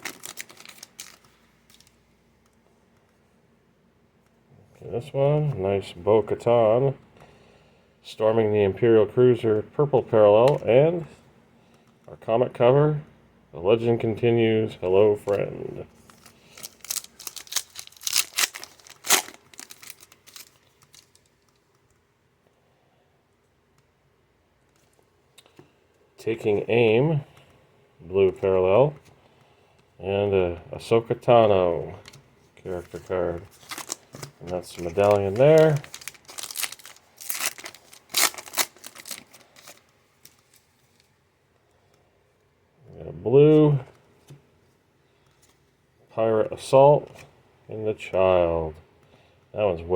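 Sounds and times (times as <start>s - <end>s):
card pack wrapper tearing and crinkling: 0.0s - 2.0s, 16.0s - 21.6s, 32.0s - 40.6s.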